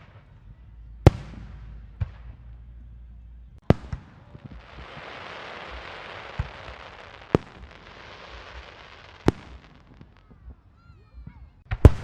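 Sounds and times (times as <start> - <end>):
firework bangs: 3.6 - 10.5
fireworks crackling fizz: 3.8 - 10.4.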